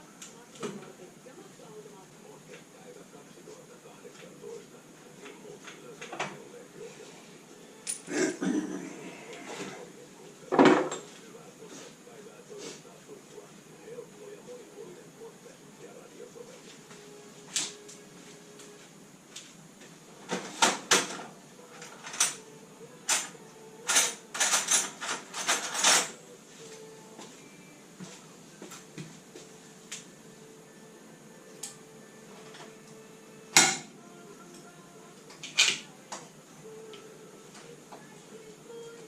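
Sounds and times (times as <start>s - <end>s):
metal tools clinking and clanking: 21.8s - 22.4s, 23.1s - 26.2s.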